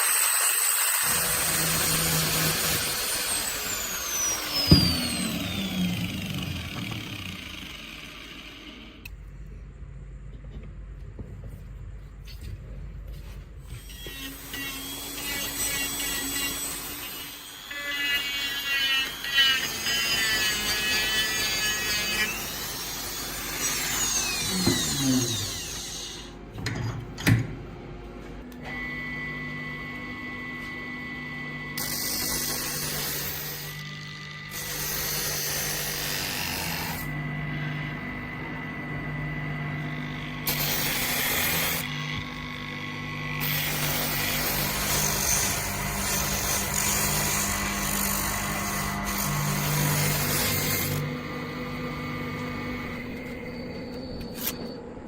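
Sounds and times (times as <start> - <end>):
power tool motor hum: 0.0 - 9.2, 13.7 - 26.4, 28.6 - 54.8
sharp knocks: 4.6 - 5.3.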